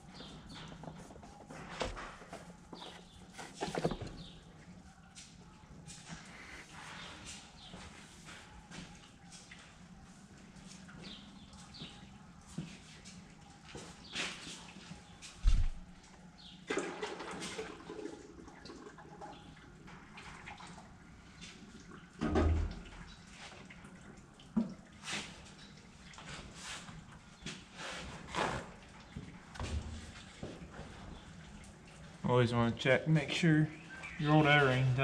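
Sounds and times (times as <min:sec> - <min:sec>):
oil dripping and trickling: 0:16.0 - 0:35.0
clinks of filter and tools: 0:22.2 - 0:23.1.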